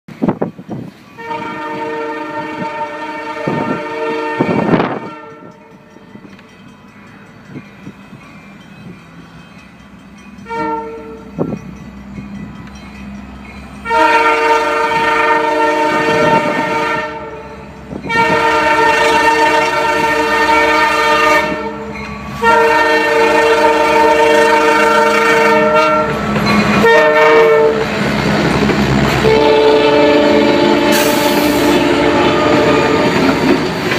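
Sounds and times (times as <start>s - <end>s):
rumble of passing train: 0.1s - 33.9s
locomotive horn blasts: 1.2s - 5.8s, 10.4s - 11.6s, 13.8s - 27.9s, 29.0s - 33.3s.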